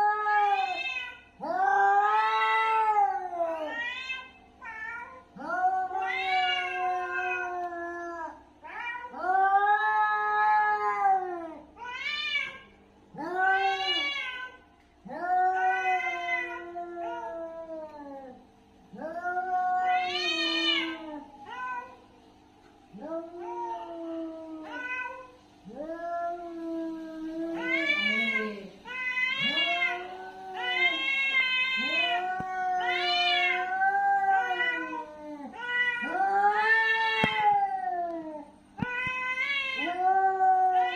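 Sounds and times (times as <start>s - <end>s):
cat yowling: 19.0s - 22.0s, 23.0s - 40.9s.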